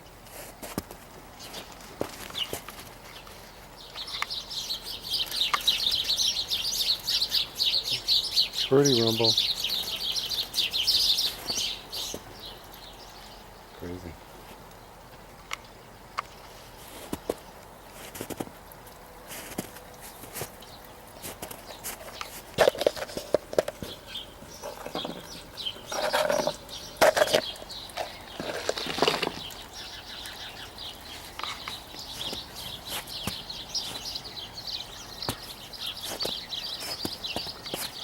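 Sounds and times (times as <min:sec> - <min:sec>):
high twittering calls: 0:02.3 - 0:14.2, 0:23.8 - 0:38.0.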